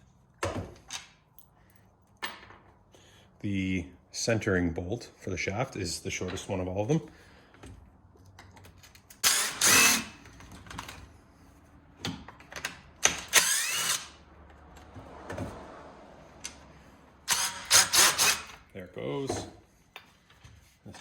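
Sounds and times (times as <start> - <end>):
tool and screws clicking: 8.4 - 10.4, 12.1 - 14.2, 17.3 - 18.6
power driver whining: 13.2 - 14.2.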